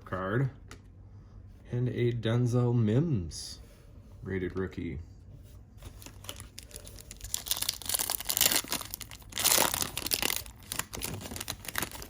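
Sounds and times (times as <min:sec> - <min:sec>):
foil wrapper tearing and crinkling: 0:06.0 - 0:12.0.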